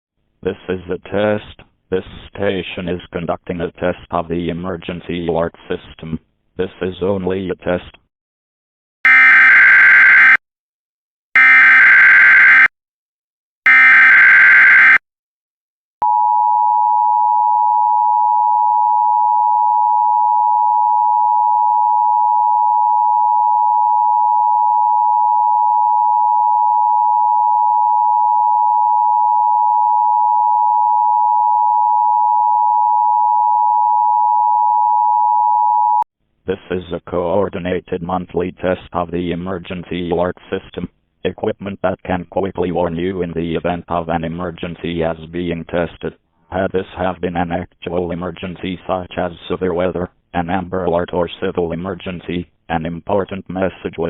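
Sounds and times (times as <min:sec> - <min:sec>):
loud dual tone: 0:09.0 - 0:10.4, 0:11.4 - 0:12.7, 0:13.7 - 0:15.0, 0:16.0 - 0:36.0.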